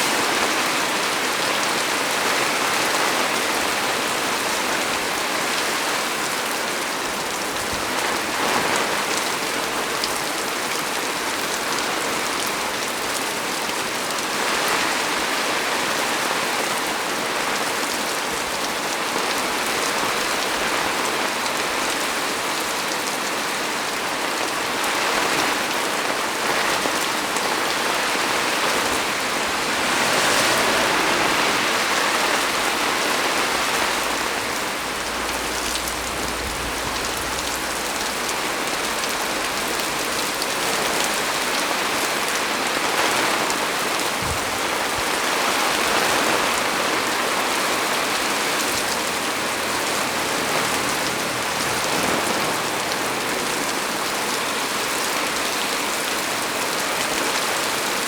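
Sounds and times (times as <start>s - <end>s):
heavy rain on leaves: 0.0s - 58.0s
faint low rumble: 33.8s - 40.0s.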